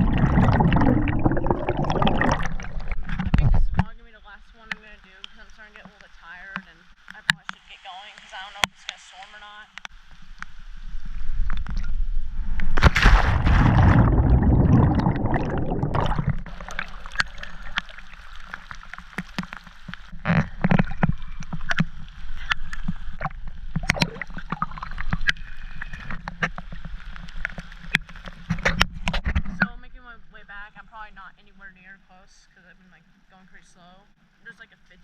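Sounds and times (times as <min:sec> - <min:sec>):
water sloshing and gurgling: 0:00.0 - 0:06.0, 0:10.0 - 0:31.2
loud rushing splash: 0:12.8 - 0:16.5
small swimming splashes: 0:12.8 - 0:26.1.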